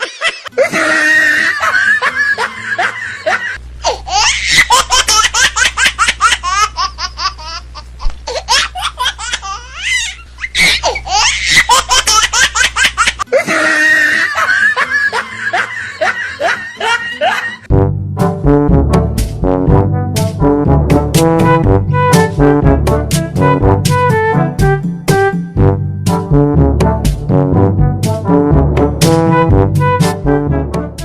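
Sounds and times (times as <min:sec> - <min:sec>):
people laughing: 0:00.0 - 0:03.6, 0:10.6 - 0:17.7
loud brass music: 0:17.7 - 0:31.0.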